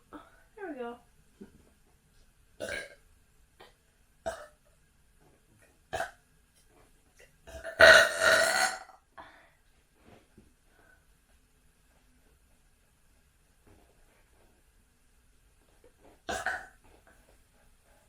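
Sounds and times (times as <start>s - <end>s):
person burping: 2.6s - 3.0s, 4.3s - 4.6s, 5.9s - 6.2s, 7.5s - 8.9s, 16.3s - 16.8s.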